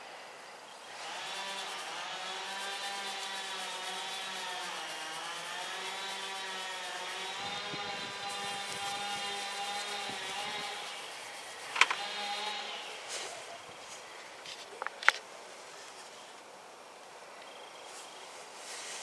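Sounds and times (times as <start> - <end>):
small electric motor running: 0.8 - 13.4.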